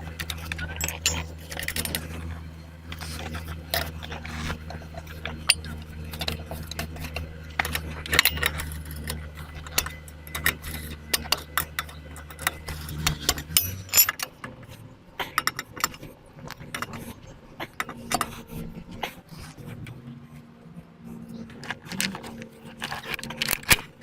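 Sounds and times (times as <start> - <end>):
steady low hum: 0.0 - 24.0
hand tools and metal parts clinking: 0.2 - 2.3, 5.2 - 14.5, 21.6 - 24.0.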